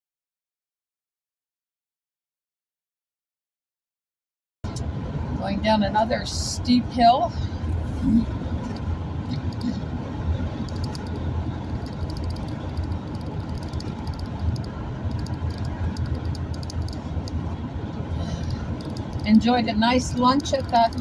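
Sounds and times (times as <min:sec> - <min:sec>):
vehicle engine and road rumble: 0:04.6 - 0:21.0.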